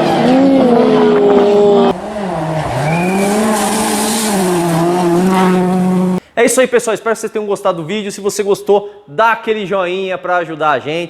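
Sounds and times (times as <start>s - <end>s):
car engine accelerating: 0.0s - 6.2s.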